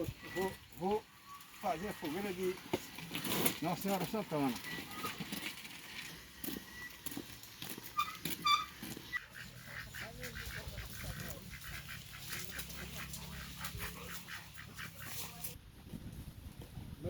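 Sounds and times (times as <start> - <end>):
farm bird honking: 7.9 - 15.5.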